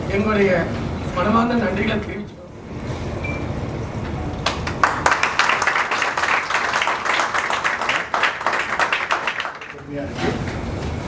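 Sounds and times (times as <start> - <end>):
audience applauding: 4.4 - 9.9.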